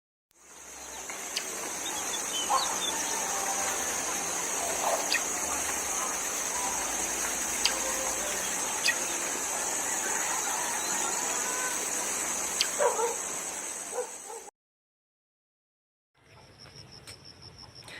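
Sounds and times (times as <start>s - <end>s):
high-pitched insect buzz: 0.4s - 14.4s
bird calls and chirps: 0.5s - 14.4s.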